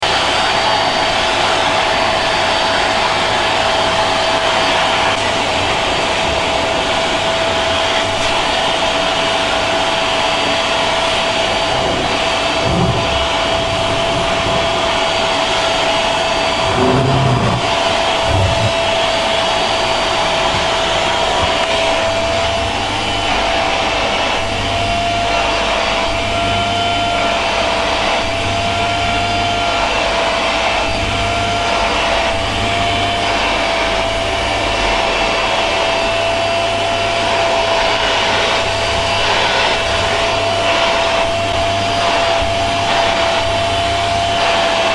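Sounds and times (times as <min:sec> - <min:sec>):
vacuum cleaner motor running: 0:00.0 - 0:44.9
low bumps: 0:11.6 - 0:15.0, 0:16.5 - 0:18.9.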